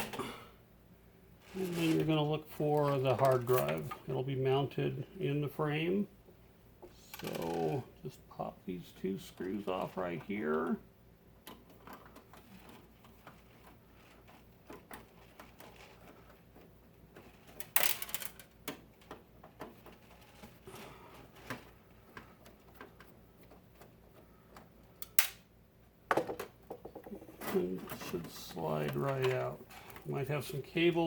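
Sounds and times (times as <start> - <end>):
small metal clicks and scrapes: 11.5 - 20.6.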